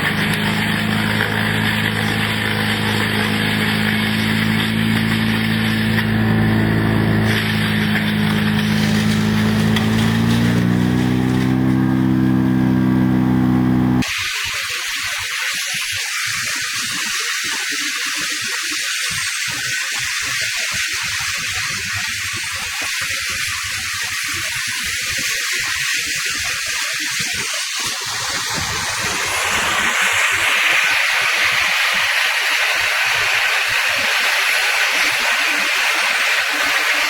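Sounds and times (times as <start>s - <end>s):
heavy machine engine revving: 0.0s - 14.1s, 28.5s - 37.0s.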